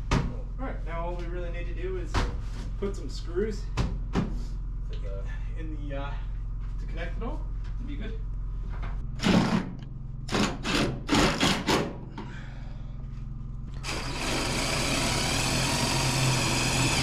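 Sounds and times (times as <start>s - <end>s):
power drill driving screw: 13.8s - 17.0s.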